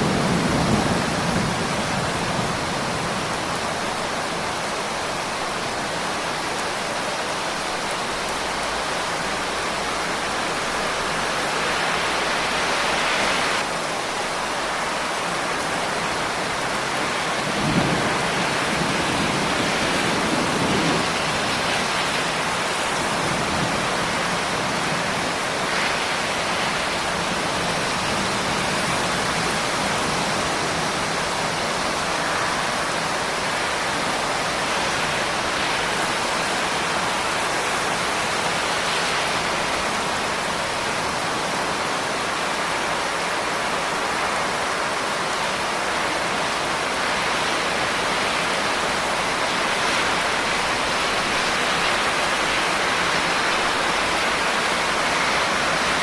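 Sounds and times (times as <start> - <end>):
low rumble of thunder: 0.0 - 3.4, 17.3 - 25.4
heavy rain: 0.0 - 56.0.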